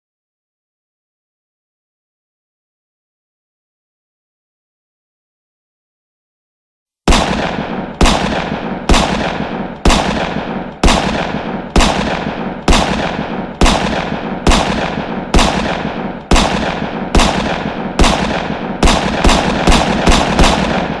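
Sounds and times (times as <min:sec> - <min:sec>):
loud echoing gunshots: 0:07.1 - 0:21.0.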